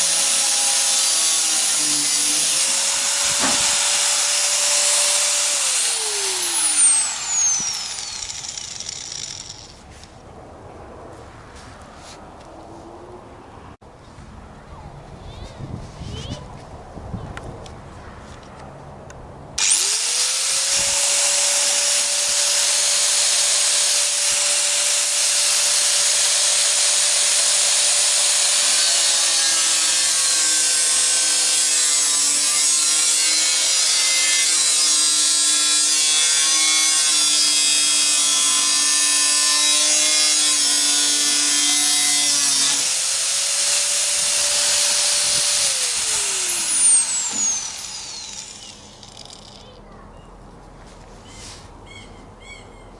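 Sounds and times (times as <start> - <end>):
electric power tool spinning: 0.0 - 9.8, 19.6 - 49.7.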